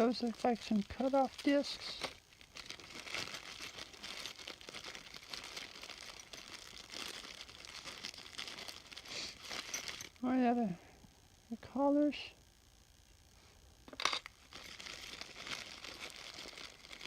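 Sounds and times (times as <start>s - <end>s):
packaging crinkling: 0.0s - 10.2s, 13.9s - 17.0s.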